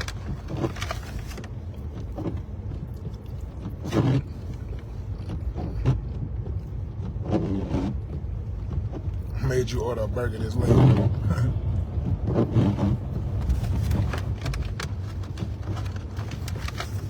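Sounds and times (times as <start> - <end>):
car driving cabin rumble: 0.0 - 17.0.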